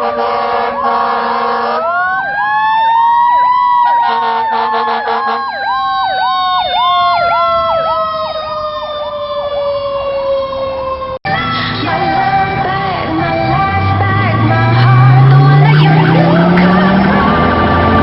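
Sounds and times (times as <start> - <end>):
vehicle horn: 0.0 - 1.9, 4.0 - 5.5
electronic siren yelping: 0.0 - 11.2, 14.8 - 18.0
siren wail: 0.0 - 11.8, 13.1 - 18.0.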